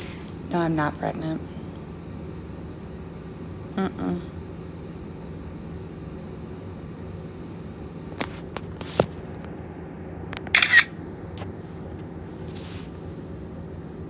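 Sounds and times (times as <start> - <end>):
low background hum: 0.0 - 14.0
sharp clicks: 10.5 - 10.9.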